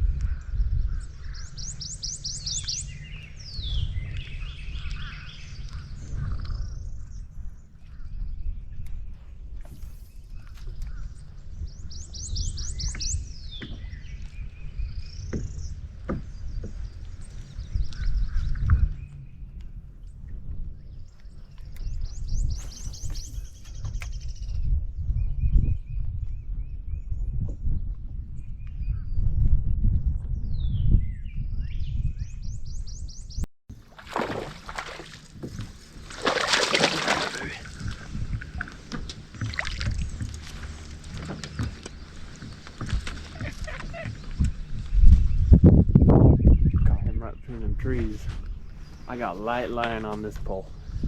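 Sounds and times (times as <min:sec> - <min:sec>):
birds calling: 0:00.0 - 0:25.4, 0:31.3 - 0:51.0
songbird singing: 0:00.0 - 0:29.4, 0:30.0 - 0:51.0
water splashing against a kayak: 0:33.7 - 0:45.4
steady low rumble: 0:37.2 - 0:51.0.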